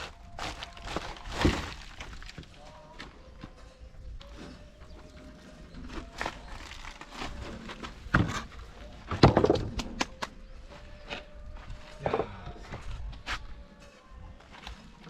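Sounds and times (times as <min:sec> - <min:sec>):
wooden boards knocking and cracking: 0:00.4 - 0:02.5, 0:07.7 - 0:10.2.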